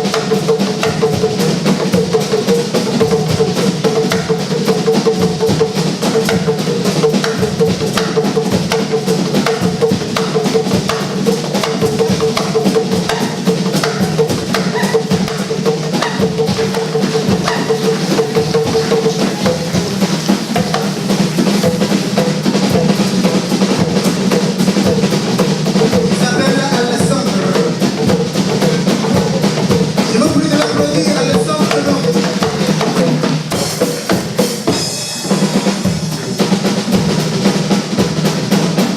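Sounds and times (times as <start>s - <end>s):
drum kit beat: 0.0s - 38.9s.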